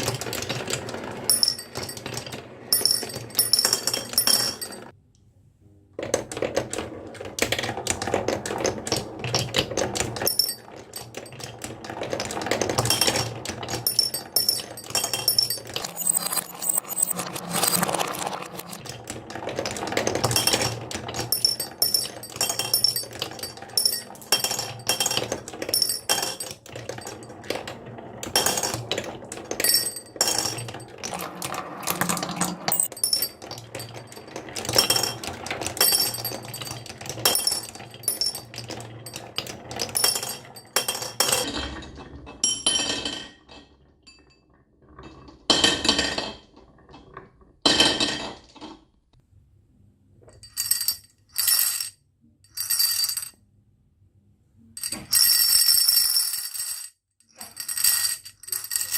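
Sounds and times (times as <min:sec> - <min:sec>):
marbles clattering down a track: 0:00.0 - 0:04.9, 0:06.0 - 0:42.2, 0:50.5 - 0:51.9, 0:54.8 - 0:58.9.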